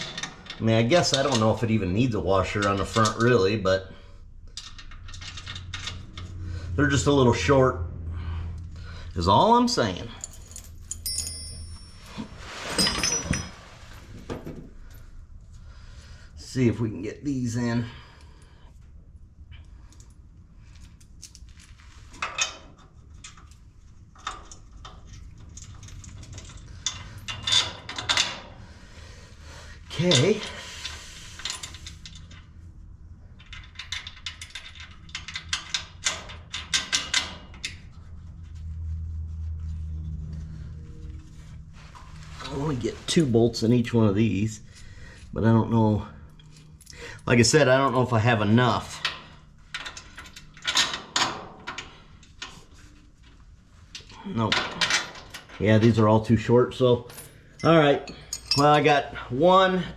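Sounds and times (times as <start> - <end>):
metal bolts clinking and rattling: 0.0 - 3.6, 4.5 - 6.4, 9.5 - 15.1, 19.8 - 28.6, 29.9 - 32.7, 33.3 - 38.1, 46.3 - 59.0
low steady hum: 0.0 - 59.9
metallic knocks and rings: 10.5 - 12.2.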